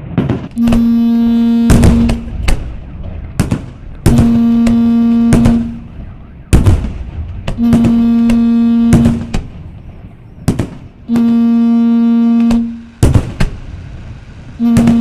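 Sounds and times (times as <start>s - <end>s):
fireworks bangs: 0.0s - 15.0s
low horn-like tone: 0.6s - 6.6s, 7.5s - 10.4s, 11.0s - 13.0s, 14.6s - 15.0s.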